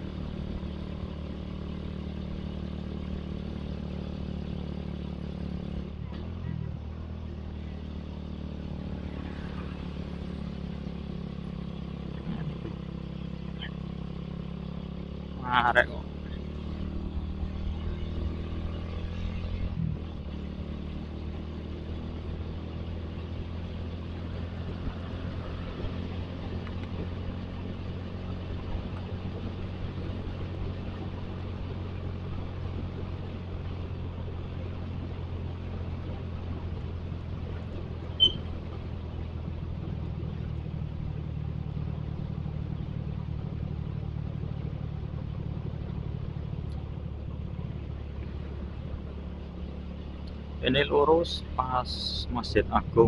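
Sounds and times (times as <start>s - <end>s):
motorcycle engine cruising: 0.0s - 53.0s
road and wind noise: 0.0s - 53.0s
short high beep: 38.2s - 38.5s.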